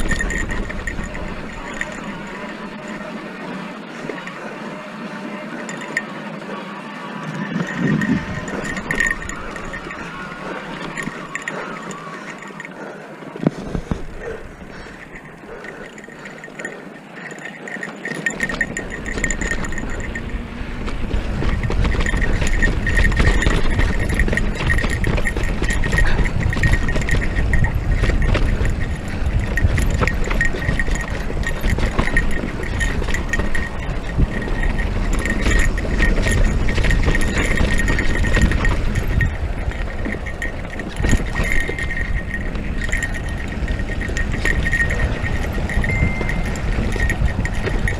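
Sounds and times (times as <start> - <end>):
bike rattling: 0.0 - 47.9
wind rumbling on microphone: 7.2 - 12.1, 18.2 - 47.9.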